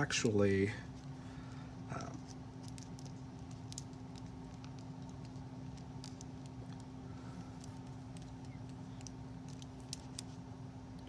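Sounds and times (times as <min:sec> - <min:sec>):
steady low hum: 0:00.0 - 0:11.0
small clicks and taps: 0:02.6 - 0:06.9, 0:07.5 - 0:10.4.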